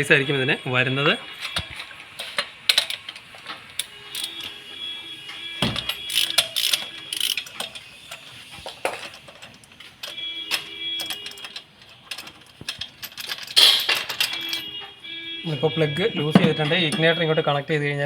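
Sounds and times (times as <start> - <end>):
socket wrench clicking: 3.8 - 4.5, 5.6 - 7.8
metallic clink: 9.0 - 14.8.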